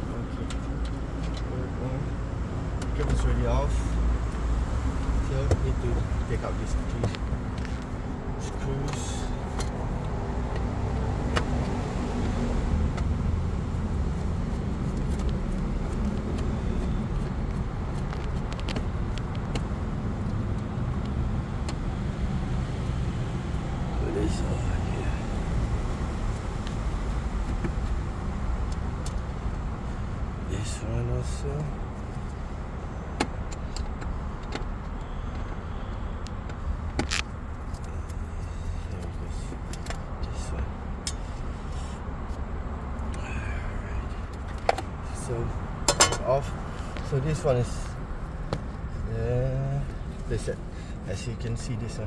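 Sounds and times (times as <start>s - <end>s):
hand tools clicking on metal: 45.9s - 46.3s.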